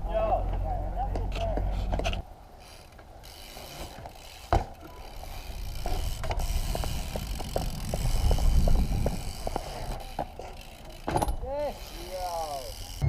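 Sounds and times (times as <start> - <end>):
bike freewheel ticking: 2.5 - 13.0
wind on microphone: 5.6 - 10.0.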